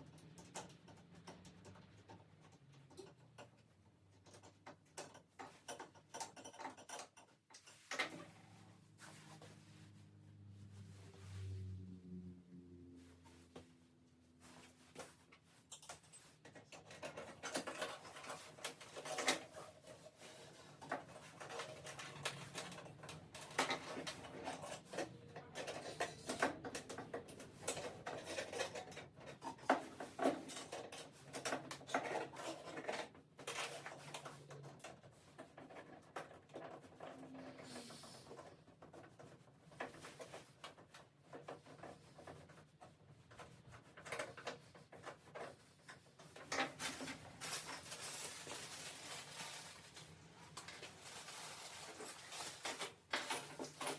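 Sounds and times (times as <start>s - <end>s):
clicks taps and rubbing of parts: 0.0s - 8.4s, 14.9s - 47.9s.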